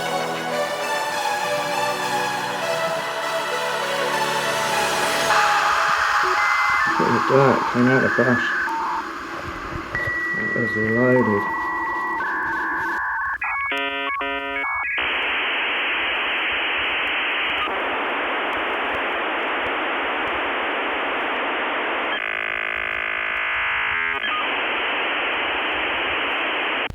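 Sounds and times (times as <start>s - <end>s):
static hiss: 0.0s - 26.9s
buzzing tone: 4.4s - 17.6s
beeping tones: 4.6s - 15.2s.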